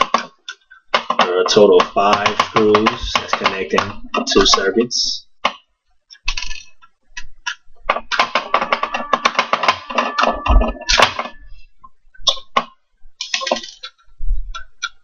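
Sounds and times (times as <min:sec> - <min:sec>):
plastic parts rattling: 0:06.2 - 0:06.9, 0:12.3 - 0:15.0.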